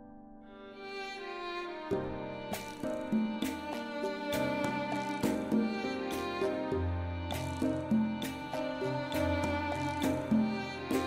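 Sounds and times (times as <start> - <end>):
slow sad string music: 0.0 - 11.0.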